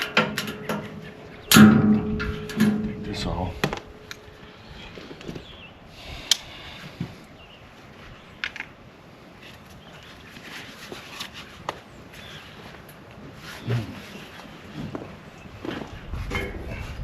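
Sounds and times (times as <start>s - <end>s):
tools clicking and knocking: 0.0s - 4.2s.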